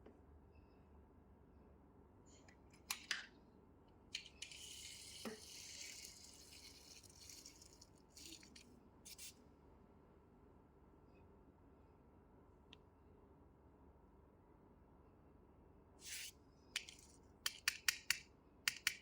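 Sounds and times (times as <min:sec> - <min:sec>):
soft hissing rustle: 0:04.2 - 0:09.4, 0:16.0 - 0:17.3.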